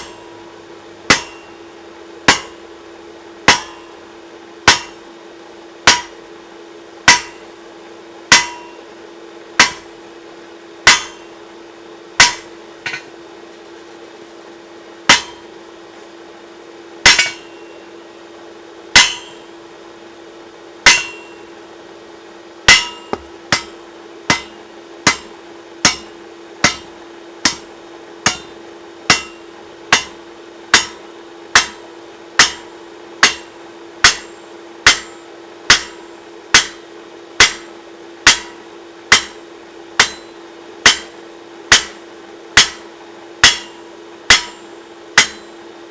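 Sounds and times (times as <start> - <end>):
hammer striking hot steel: 0.0 - 0.4, 1.1 - 1.7, 2.3 - 2.6, 3.5 - 4.0, 4.6 - 5.0, 5.9 - 6.2, 7.1 - 7.5, 8.3 - 8.8, 9.6 - 9.9, 10.8 - 11.3, 12.2 - 13.1, 15.1 - 15.5, 17.0 - 17.8, 18.9 - 19.6, 20.8 - 21.5, 22.7 - 45.6
steady hum: 0.0 - 45.9.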